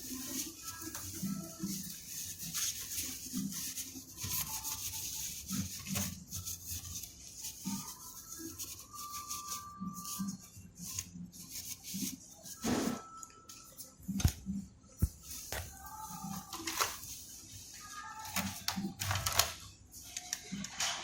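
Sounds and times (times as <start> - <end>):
rubbing and scraping: 0.0 - 13.1.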